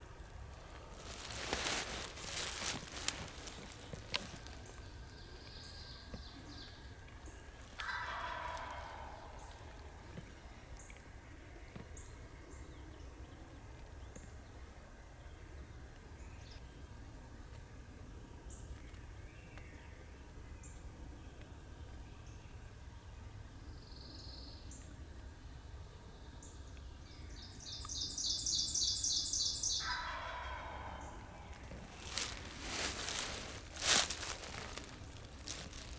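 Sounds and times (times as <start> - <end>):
songbirds chirping: 0.0 - 14.6, 25.8 - 35.9
turkey gobbling: 7.8 - 9.4, 29.8 - 33.4.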